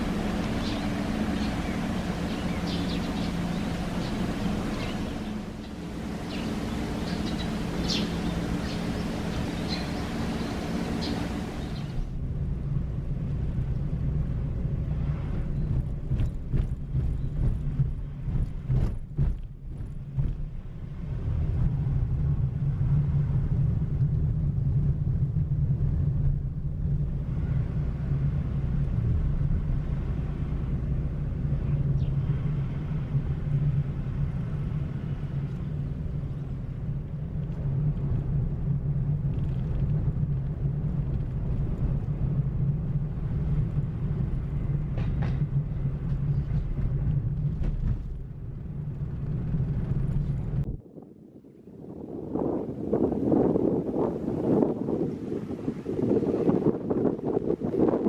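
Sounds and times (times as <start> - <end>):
car road and engine rumble: 0.0 - 58.0
low hum: 0.0 - 58.0
sharp knocks and bumps: 15.7 - 20.6.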